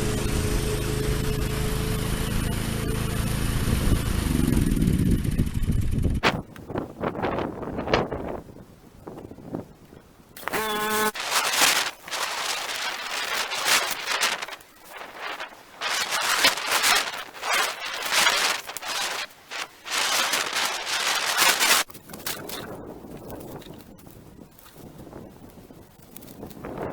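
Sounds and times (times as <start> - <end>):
brief pitched tone: 10.5 - 11.2
pole saw rasping through branches: 10.5 - 21.9.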